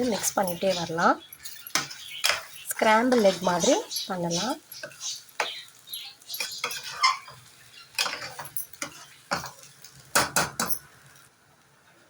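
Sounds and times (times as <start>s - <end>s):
spoon scraping and knocking pan: 0.0s - 10.9s.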